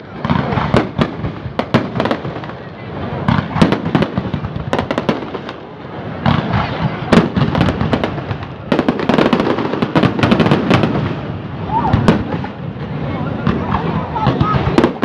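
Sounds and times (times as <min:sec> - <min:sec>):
fireworks bangs and crackling: 0:00.0 - 0:15.0.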